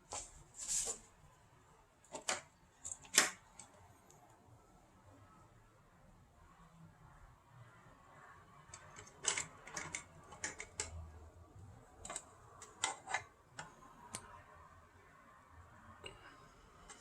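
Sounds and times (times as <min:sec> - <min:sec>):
clicks and taps of fan parts: 0:08.7 - 0:11.1, 0:12.0 - 0:14.3.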